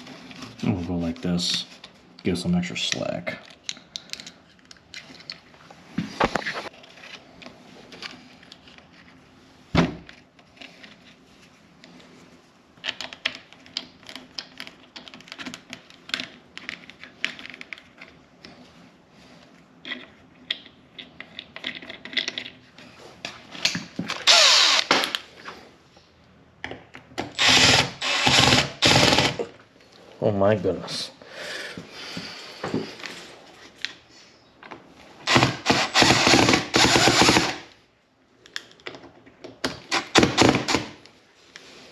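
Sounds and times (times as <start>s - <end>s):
power drill running: 24.2s - 24.9s, 27.4s - 29.4s, 35.3s - 37.6s.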